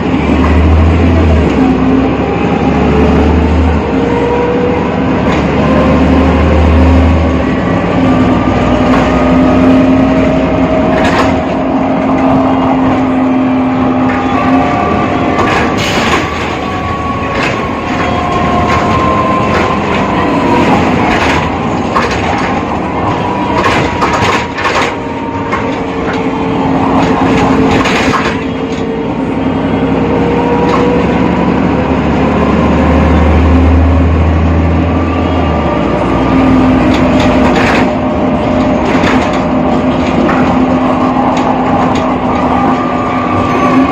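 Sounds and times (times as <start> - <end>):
bus engine whining: 0.0 - 43.9
rattles and sharp knocks: 15.4 - 28.9, 36.8 - 42.5.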